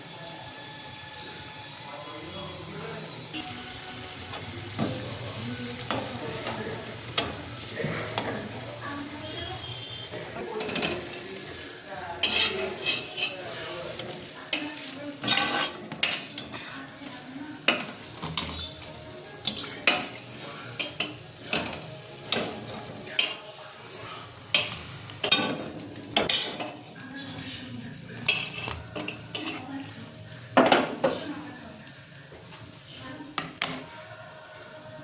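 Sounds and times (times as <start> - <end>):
food sizzling in hot oil: 0.0 - 35.0
metal spatula scraping pan: 12.2 - 16.5, 26.1 - 29.7.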